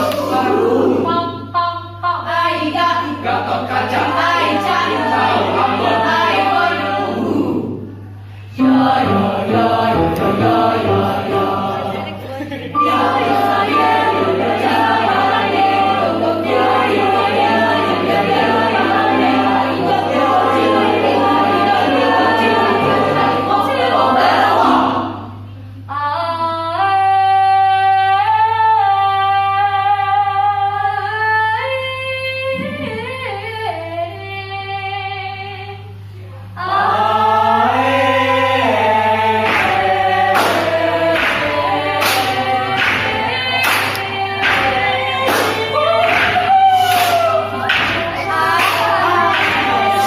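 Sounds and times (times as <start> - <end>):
choir singing: 0.0 - 7.9, 8.5 - 26.9, 36.4 - 50.0
steady low hum: 0.0 - 50.0
sharp percussive hits: 39.4 - 50.0.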